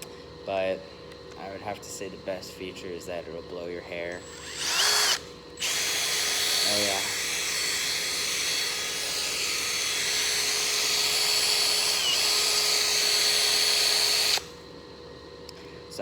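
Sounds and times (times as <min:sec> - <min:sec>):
cordless drill motor whine: 0:04.1 - 0:14.7.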